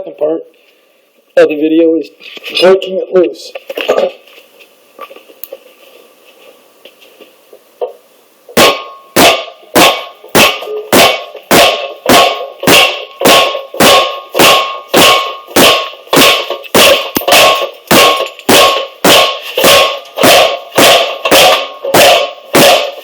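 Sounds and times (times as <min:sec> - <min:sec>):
hammer blows on steel: 0:08.6 - 0:23.0.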